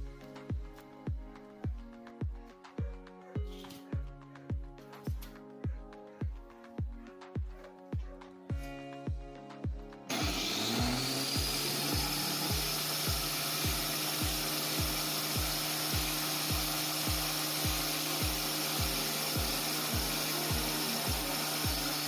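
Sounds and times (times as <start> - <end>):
background music with steady beat: 0.0 - 22.0
high motor whine: 10.1 - 22.0
saw blade hissing through wood: 10.1 - 22.0.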